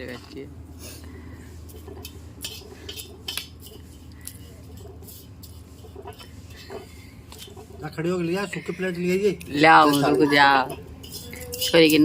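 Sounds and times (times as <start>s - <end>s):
low steady hum: 0.0s - 12.0s
small hard objects clinking: 1.8s - 12.0s.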